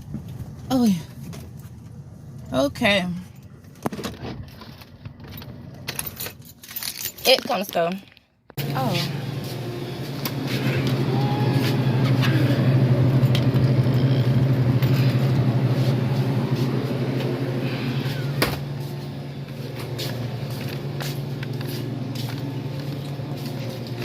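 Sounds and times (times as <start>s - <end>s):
car engine and road hum: 8.5s - 24.0s.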